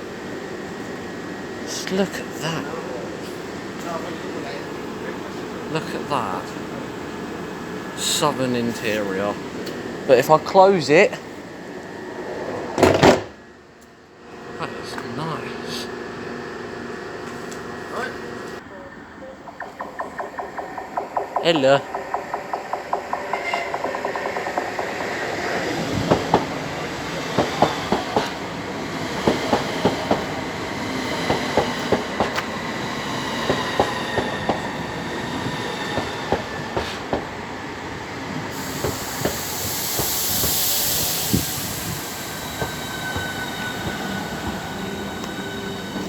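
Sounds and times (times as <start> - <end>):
train wheels squealing: 19.4 - 37.2, 38.5 - 46.0
train wheels clicking over rail joints: 19.4 - 46.0
air hiss: 38.5 - 45.5.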